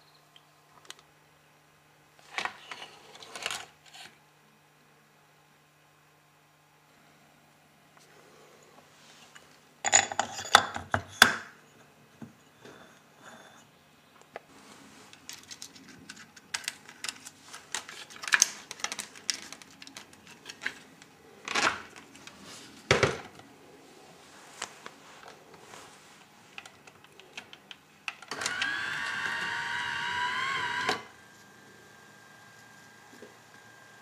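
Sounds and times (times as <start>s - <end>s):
motor whine: 28.3s - 34.0s.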